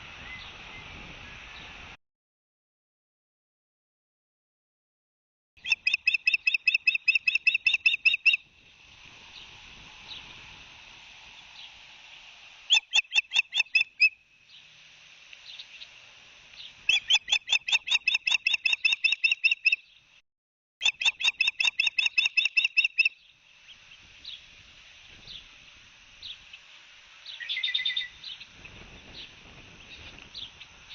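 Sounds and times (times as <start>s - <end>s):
faint steady hiss: 0.0s - 2.0s, 6.8s - 17.4s, 22.0s - 30.9s
ospreys calling: 12.7s - 14.2s.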